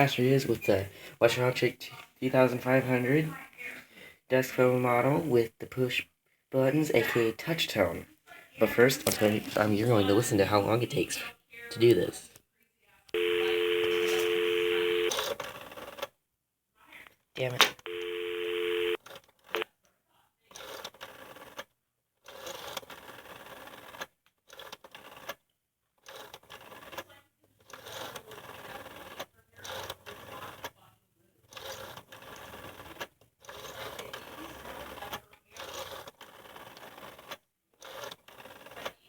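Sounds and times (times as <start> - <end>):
rotary phone dial clicking: 20.5 - 25.4, 26.0 - 30.8, 31.4 - 39.0.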